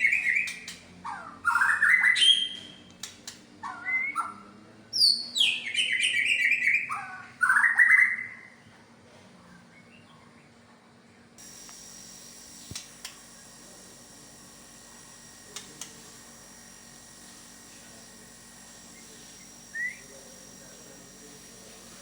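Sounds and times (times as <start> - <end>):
faint high whine: 11.4 - 22.0
sharp clicks: 11.4 - 22.0.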